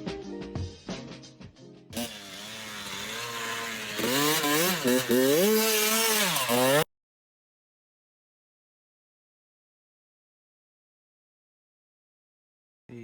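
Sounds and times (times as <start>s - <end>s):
dirt bike engine revving: 2.0s - 6.9s.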